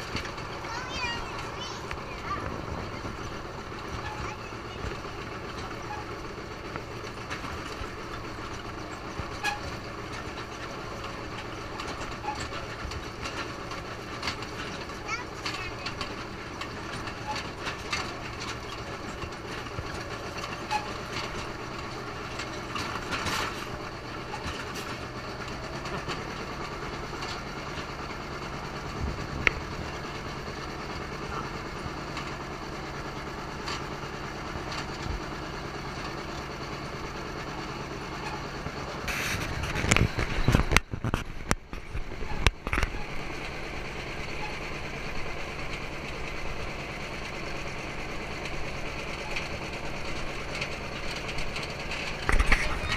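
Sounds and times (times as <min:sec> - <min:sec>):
loud thumps and rumbles: 0:00.0 - 0:15.1, 0:28.9 - 0:30.1, 0:39.0 - 0:43.0
tractor engine running: 0:00.0 - 0:52.9
wagon rattling: 0:00.0 - 0:52.9.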